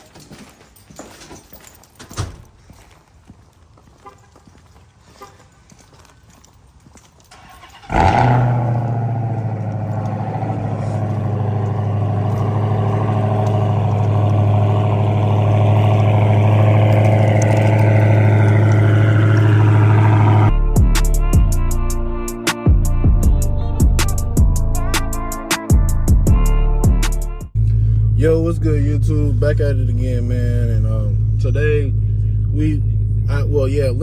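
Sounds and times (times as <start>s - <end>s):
car engine starting and idling: 7.3s - 20.5s, 27.6s - 34.0s.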